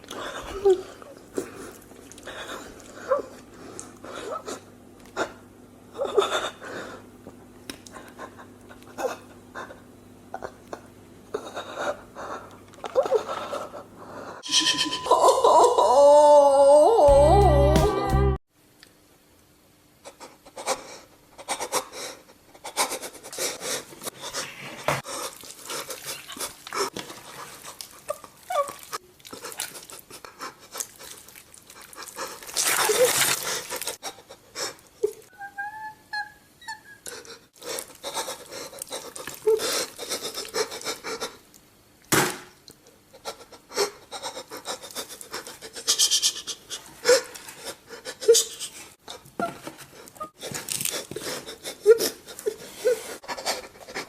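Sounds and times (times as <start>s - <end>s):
man sobbing and panting: 4.1s - 7.1s, 7.9s - 14.4s, 20.0s - 24.4s, 28.1s - 31.0s, 31.9s - 35.3s, 37.0s - 41.4s, 43.1s - 54.0s
high whimper: 14.4s - 18.4s, 34.0s - 41.3s.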